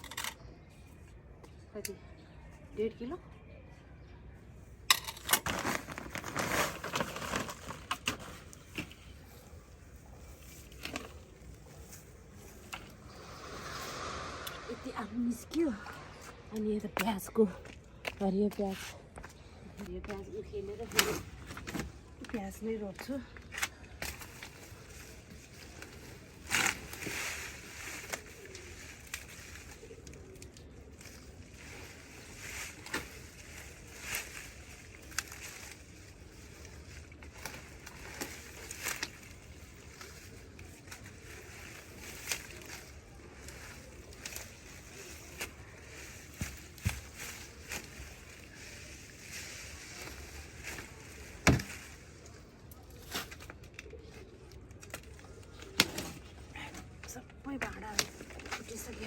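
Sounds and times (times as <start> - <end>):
onions pulled from soil: 5.4 - 18.0, 24.0 - 56.5
soil rustling: 5.4 - 18.8, 23.6 - 59.0
faint steady hiss: 11.8 - 17.1.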